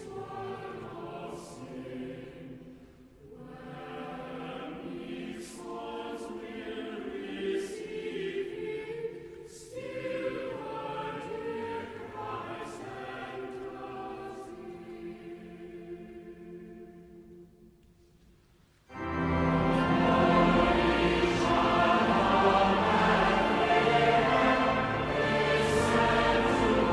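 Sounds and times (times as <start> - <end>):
choir singing: 0.0 - 17.8, 18.9 - 26.9
loud choral music: 0.0 - 17.8, 18.9 - 26.9.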